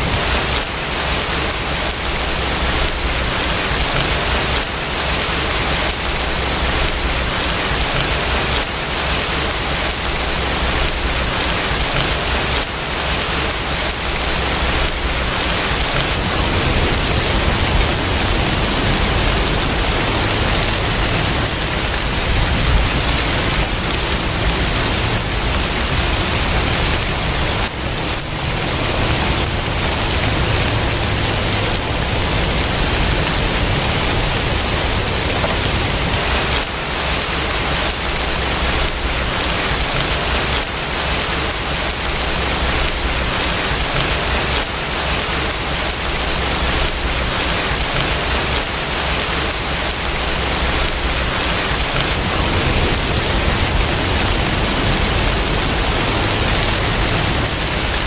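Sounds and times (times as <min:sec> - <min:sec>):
steady rain falling: 0:00.0 - 0:58.0
low rumble: 0:14.4 - 0:36.5, 0:50.6 - 0:58.0.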